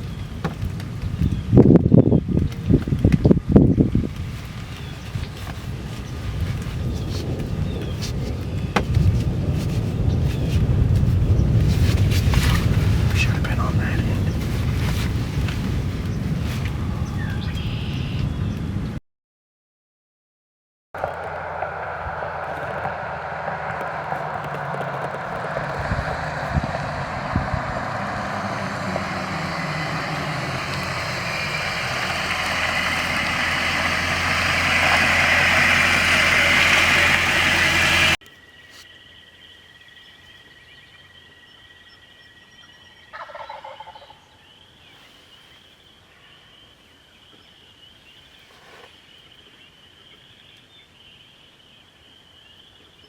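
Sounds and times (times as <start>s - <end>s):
loud rushing noise with hum: 21.4s - 38.2s
wild turkey gobbling: 43.1s - 44.2s.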